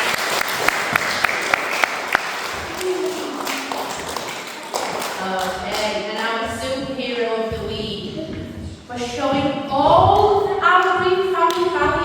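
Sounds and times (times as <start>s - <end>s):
children applauding: 0.0s - 5.6s.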